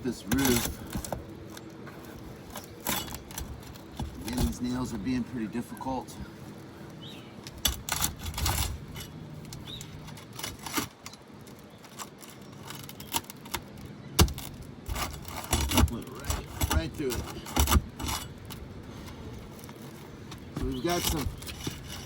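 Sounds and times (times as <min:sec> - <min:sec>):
metal bar scraping shingles: 0:00.2 - 0:01.1, 0:02.4 - 0:04.6, 0:07.6 - 0:11.2, 0:14.2 - 0:22.0.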